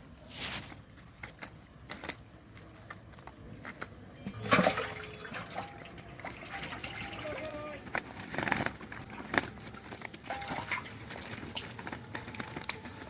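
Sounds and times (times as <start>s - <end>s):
water splashing: 4.3s - 7.8s, 10.2s - 11.7s.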